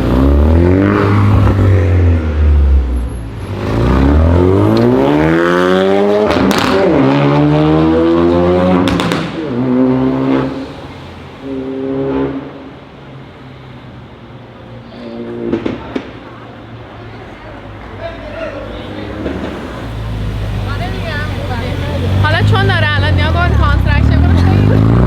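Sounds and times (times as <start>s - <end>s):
car engine accelerating hard: 0.0s - 12.6s, 18.4s - 25.0s
sharp exhaust pops: 6.2s - 7.0s, 8.8s - 9.7s.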